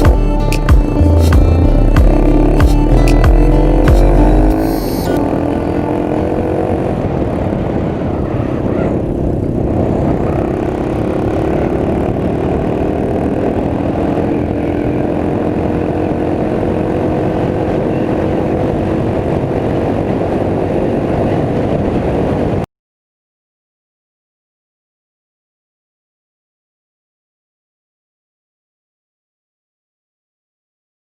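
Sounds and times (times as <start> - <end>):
motorcycle engine running: 0.0 - 8.3, 9.0 - 22.0
low rumble of road and wind: 0.0 - 22.7.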